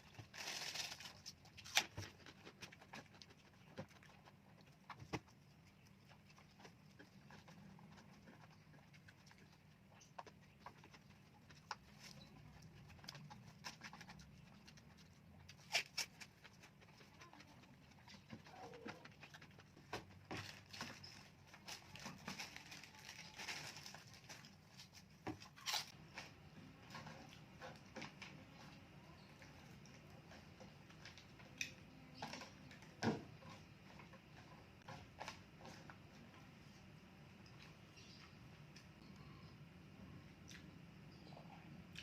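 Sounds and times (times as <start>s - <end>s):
close chewing and mouth smacks: 0.0s - 39.3s, 40.3s - 42.0s.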